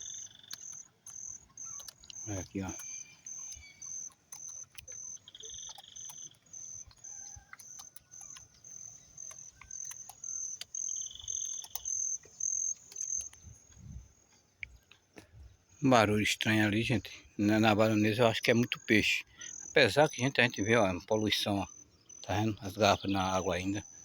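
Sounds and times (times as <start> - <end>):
sharp clicks and pops in water: 0.0 - 13.8
high insect trills: 0.0 - 24.0
insect chirping: 0.0 - 24.0.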